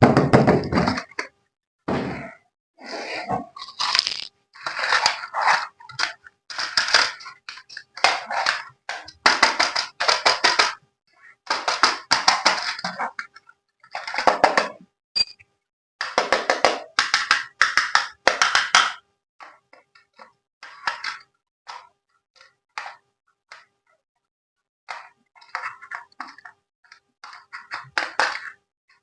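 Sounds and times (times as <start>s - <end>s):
packaging crackling and rustling: 3.6s - 5.2s.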